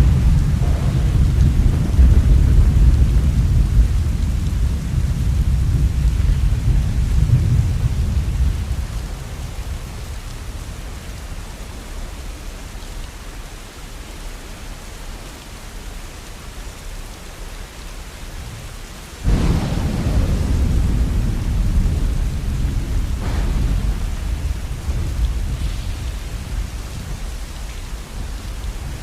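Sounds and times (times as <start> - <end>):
loud thunder clap: 0.0 - 9.8, 19.2 - 29.0
rumble of thunder: 0.0 - 12.8, 18.4 - 29.0
steady falling rain: 0.0 - 29.0.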